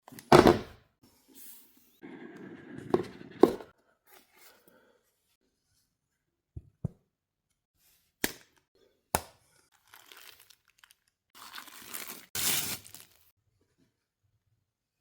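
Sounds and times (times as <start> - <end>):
wrapping rustling and crinkling: 9.7 - 13.3.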